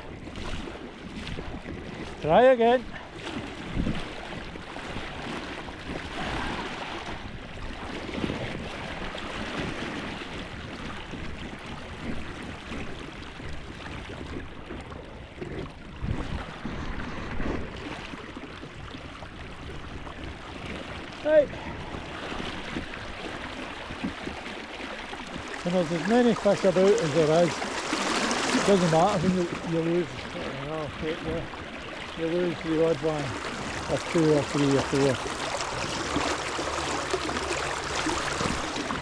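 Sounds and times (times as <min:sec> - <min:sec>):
wind buffeting microphone: 0:00.0 - 0:39.0
river water rushing: 0:21.0 - 0:39.0.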